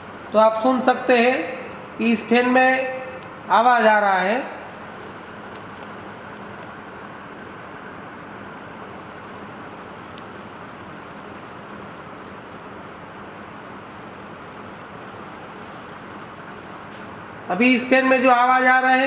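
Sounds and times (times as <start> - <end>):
ceiling fan whirring: 0.0 - 19.0.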